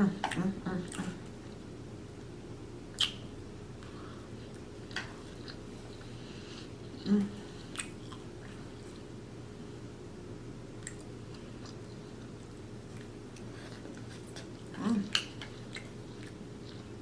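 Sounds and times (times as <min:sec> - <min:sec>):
wet mouth clicks: 0:03.0 - 0:03.3, 0:07.7 - 0:08.2, 0:10.8 - 0:11.8
close chewing of food: 0:03.8 - 0:09.1, 0:10.8 - 0:17.0
person humming mm: 0:07.0 - 0:07.5.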